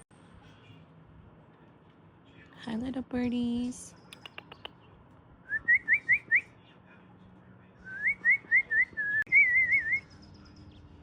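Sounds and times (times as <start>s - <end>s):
whistled notes: 5.5s - 6.5s, 7.8s - 10.1s.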